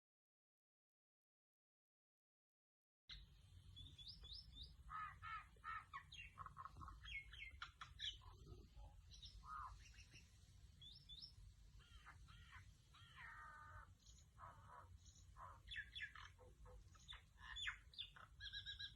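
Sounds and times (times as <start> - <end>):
mynah bird chattering and squawks: 4.1 - 18.9.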